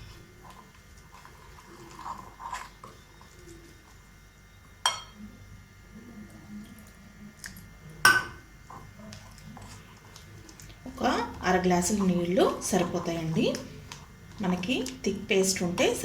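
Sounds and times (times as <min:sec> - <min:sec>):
batter stirring in a bowl: 0:00.0 - 0:05.2, 0:08.6 - 0:16.0.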